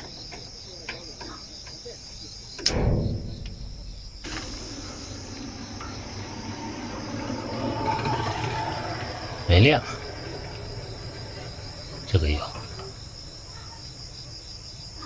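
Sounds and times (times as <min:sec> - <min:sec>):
insects chirping: 0:00.0 - 0:15.0
sharp click: 0:02.6 - 0:04.5
loud low thud: 0:02.6 - 0:13.1.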